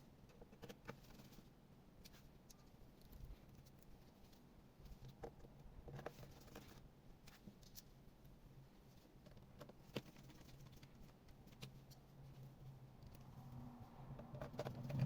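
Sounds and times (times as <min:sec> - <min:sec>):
faint low hum: 0:00.0 - 0:15.0.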